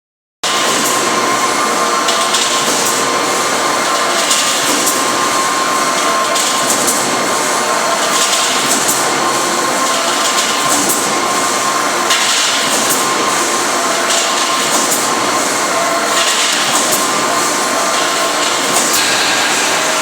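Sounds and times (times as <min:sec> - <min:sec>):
welding machine drone: 0:18.8 - 0:20.0
bursts of hiss: 0:19.0 - 0:20.0.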